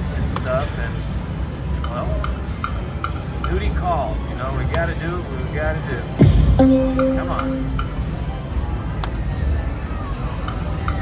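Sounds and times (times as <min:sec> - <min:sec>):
slot machine click: 0:06.6 - 0:08.0.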